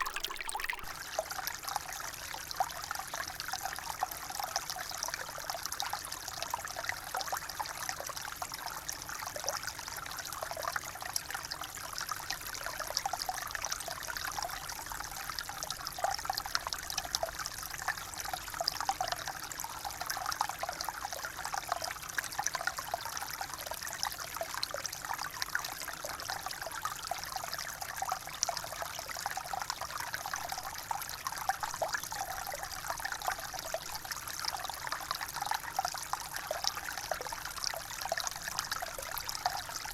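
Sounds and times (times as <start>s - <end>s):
water trickling: 0.0s - 1.2s.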